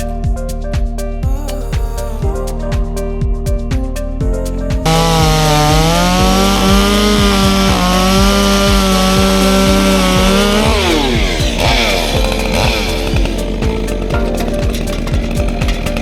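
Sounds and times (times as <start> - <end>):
chainsaw running at high revs: 4.8 - 16.0.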